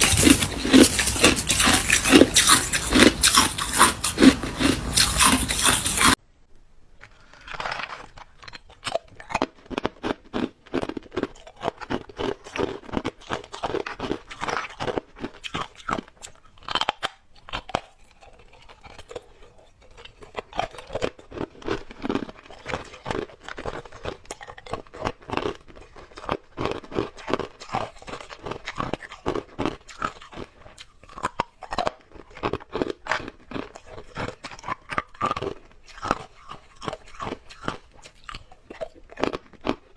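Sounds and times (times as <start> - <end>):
ice crunching while chewed: 0.0 - 6.2, 7.0 - 39.9.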